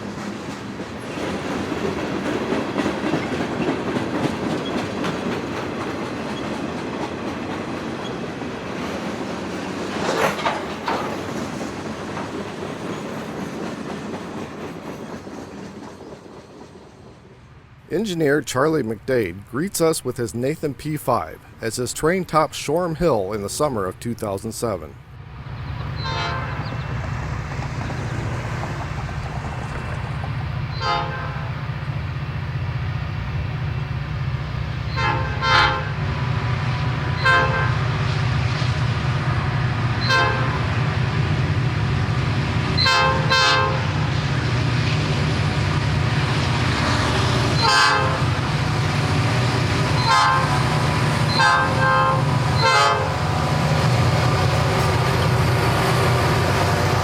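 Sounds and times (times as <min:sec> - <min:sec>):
diesel locomotive rumble: 0:00.0 - 0:57.0
locomotive horn toots: 0:26.0 - 0:26.8, 0:30.7 - 0:31.6, 0:34.9 - 0:36.0, 0:37.1 - 0:37.9, 0:40.0 - 0:40.7, 0:42.8 - 0:44.1, 0:47.5 - 0:48.4, 0:49.9 - 0:53.3.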